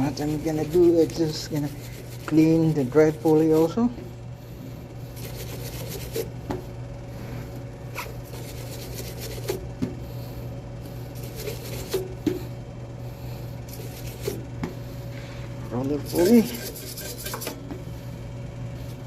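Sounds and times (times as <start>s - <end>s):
wire brush scrubbing metal: 0.0s - 3.8s, 7.9s - 9.6s, 15.8s - 17.6s
steady hum: 0.0s - 19.0s.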